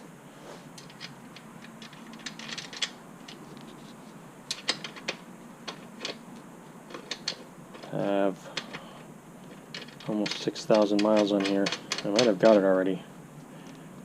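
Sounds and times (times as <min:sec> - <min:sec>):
metallic clicks and clatters: 0:00.8 - 0:03.4, 0:04.5 - 0:06.2, 0:06.9 - 0:08.8, 0:09.5 - 0:12.7.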